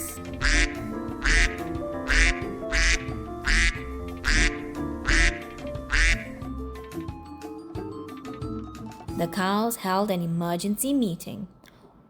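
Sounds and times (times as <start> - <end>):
light background music: 0.0 - 11.7
duck quacking: 0.4 - 6.3.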